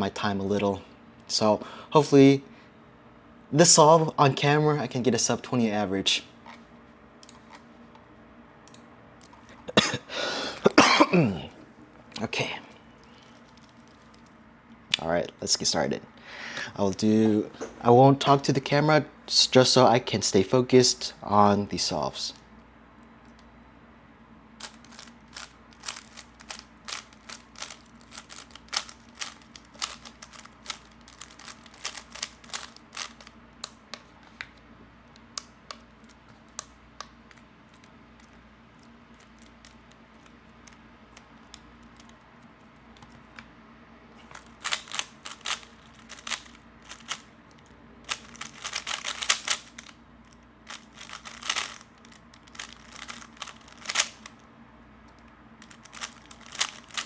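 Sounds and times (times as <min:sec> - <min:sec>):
plastic cube layers clicking: 0:24.6 - 0:33.8, 0:48.1 - 0:49.9, 0:50.7 - 0:54.2, 0:55.6 - 0:57.0.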